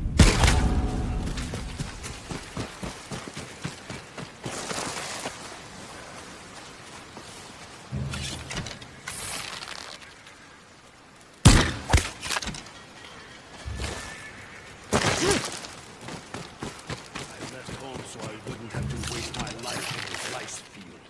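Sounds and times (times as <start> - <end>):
rustling: 4.4 - 11.4, 18.6 - 20.9.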